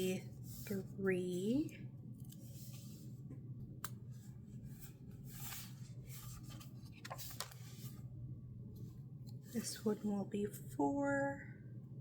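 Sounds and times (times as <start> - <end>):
steady low hum: 0.0 - 12.0
paper rustling and rubbing: 2.2 - 3.1, 4.1 - 8.1.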